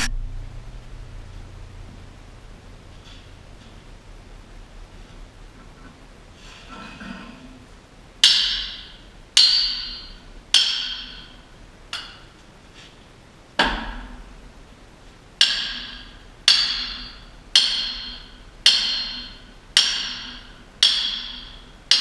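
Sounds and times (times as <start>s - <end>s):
hammer striking steel: 8.2s - 12.2s, 15.4s - 22.0s.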